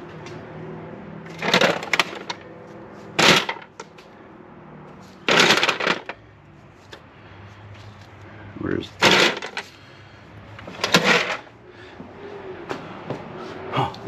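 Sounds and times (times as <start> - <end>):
hand tools clattering: 1.3 - 2.4, 3.2 - 3.9, 5.2 - 6.2, 9.0 - 9.8, 10.6 - 11.5.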